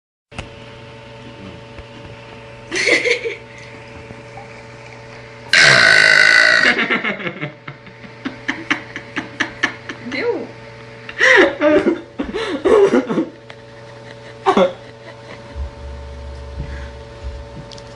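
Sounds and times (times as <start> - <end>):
girl burping: 5.5 - 6.8.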